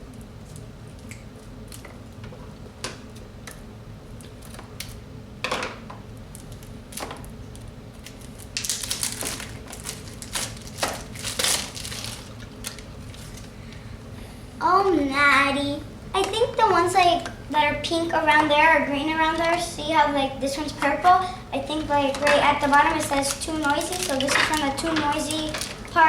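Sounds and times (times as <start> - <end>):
plastic bag crinkling as torn open: 6.4 - 13.5, 22.2 - 26.0.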